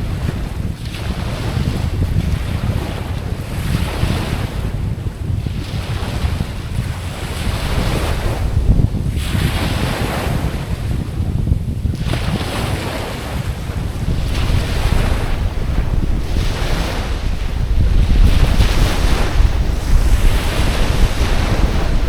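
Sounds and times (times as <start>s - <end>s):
wind rumble on microphone: 0.0s - 22.0s
ocean waves washing in: 12.7s - 22.0s.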